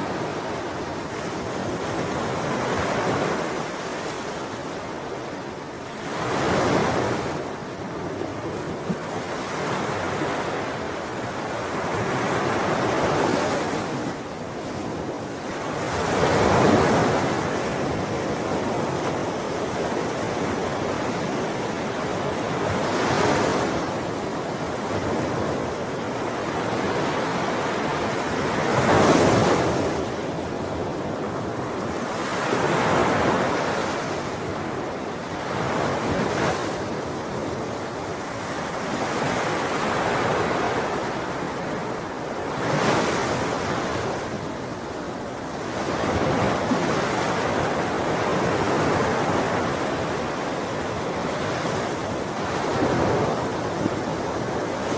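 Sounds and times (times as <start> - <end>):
sea waves breaking on shore: 0.0 - 54.9.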